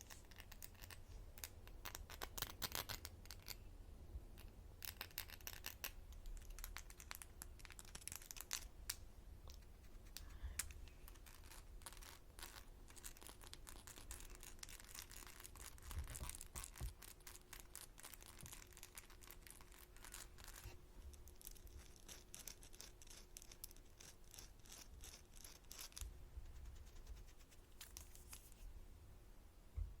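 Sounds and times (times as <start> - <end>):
fingernails scratching on earring: 11.2 - 28.6.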